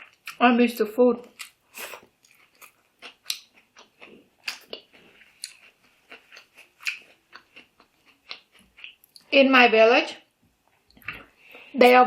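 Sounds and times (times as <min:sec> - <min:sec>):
person chewing crunchy food: 0:00.0 - 0:00.4, 0:01.2 - 0:09.3.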